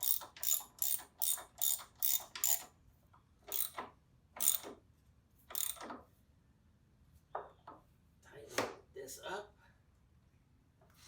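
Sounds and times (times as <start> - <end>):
ratchet wrench clicking: 0.0 - 2.7, 3.5 - 3.8, 4.4 - 4.7, 5.5 - 5.8.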